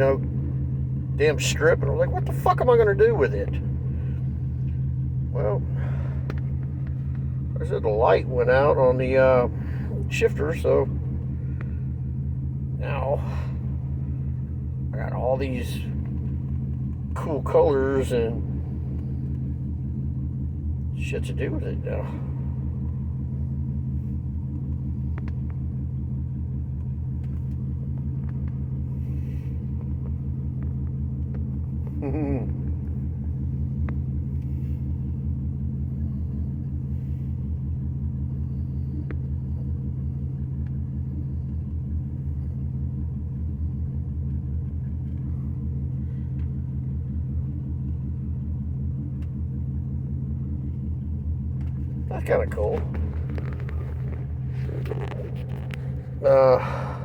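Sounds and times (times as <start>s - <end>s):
car engine idling: 0.0s - 57.0s.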